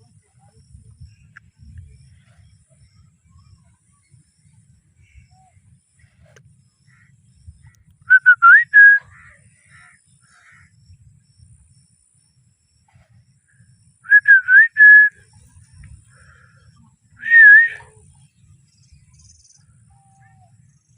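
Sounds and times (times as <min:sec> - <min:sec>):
parrot whistling: 0:08.1 - 0:09.0, 0:17.2 - 0:17.8.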